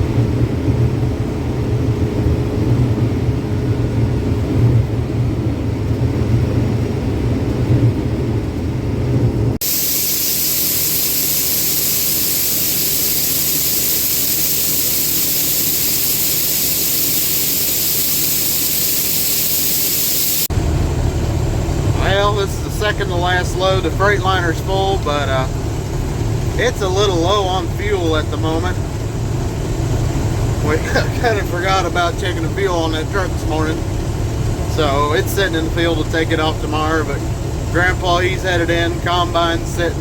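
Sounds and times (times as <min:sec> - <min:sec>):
combine engine drone: 0:00.0 - 0:40.0
steady even hiss: 0:09.6 - 0:20.5.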